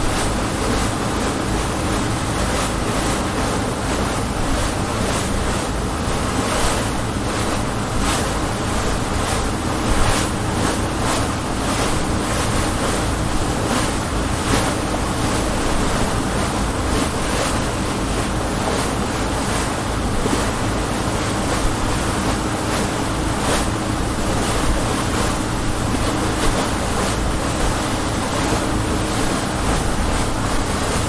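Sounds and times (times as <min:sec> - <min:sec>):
hull slapping through waves: 0:00.0 - 0:31.0
speedboat engine drone: 0:00.0 - 0:31.0.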